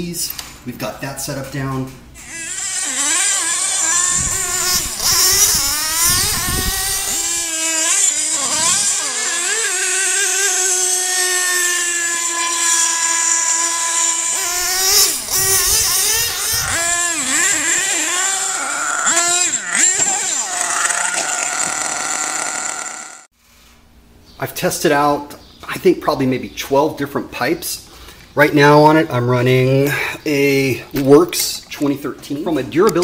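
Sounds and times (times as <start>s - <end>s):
small nitro engine revving: 2.2s - 23.3s.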